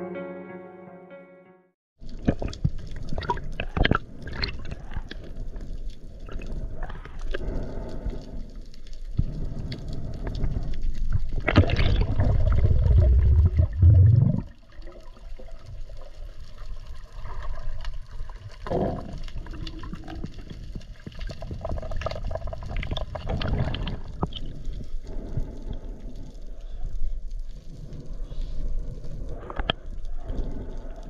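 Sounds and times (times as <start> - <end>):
rush of water and bubbles: 2.0 - 8.5, 9.1 - 26.2
underwater sloshing and bubbling: 2.0 - 31.0.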